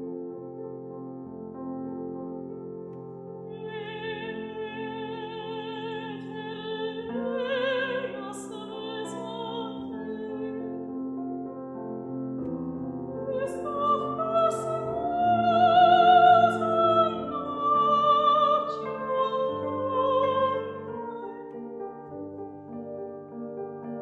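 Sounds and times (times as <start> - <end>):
singer with strong vibrato: 3.6 - 10.6, 13.3 - 21.3.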